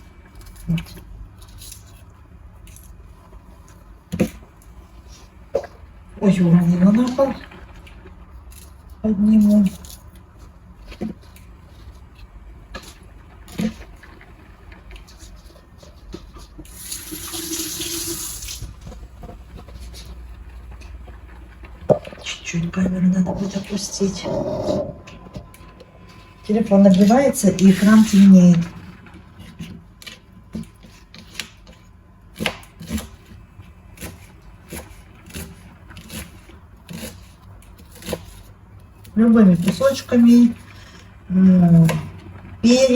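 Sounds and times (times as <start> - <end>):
kitchen tap running: 16.6 - 19.1.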